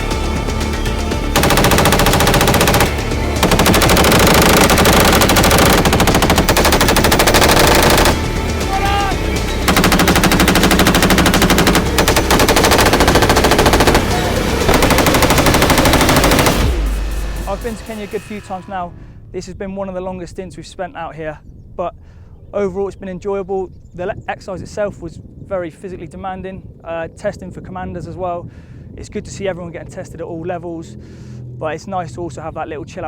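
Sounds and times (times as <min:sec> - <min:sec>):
machine-gun fire: 0:01.4 - 0:17.7.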